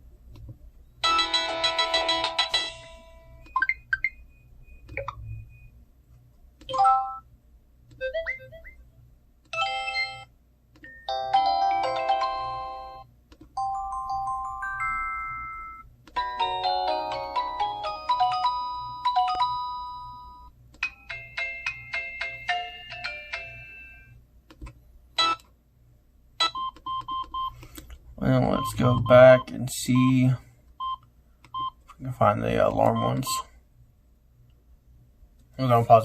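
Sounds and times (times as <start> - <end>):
phone text message alert tones: 28.3 - 30.2, 32.6 - 33.5.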